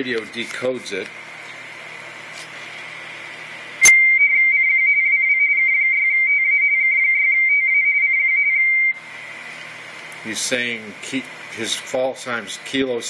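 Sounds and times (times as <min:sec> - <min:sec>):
two-tone data signal warble: 0:03.8 - 0:09.0.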